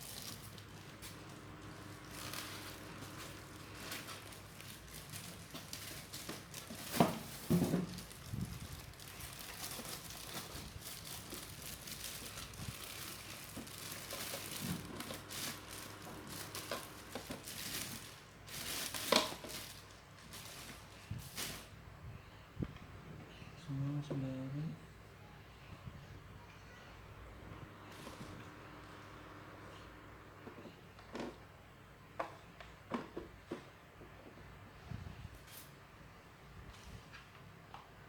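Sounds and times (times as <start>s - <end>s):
packaging crinkling and rustling: 0.0s - 21.8s, 27.9s - 28.5s.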